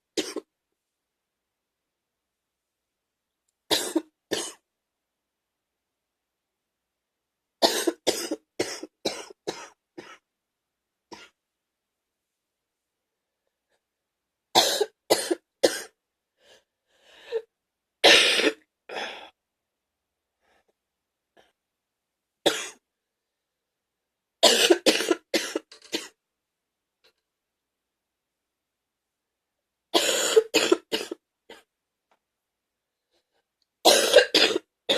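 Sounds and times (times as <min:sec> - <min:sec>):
person coughing wetly: 0:00.2 - 0:00.5, 0:03.7 - 0:04.6, 0:07.6 - 0:10.2, 0:14.6 - 0:16.0, 0:18.0 - 0:19.2, 0:22.4 - 0:22.8, 0:24.4 - 0:26.2, 0:30.0 - 0:31.6, 0:33.8 - 0:34.9.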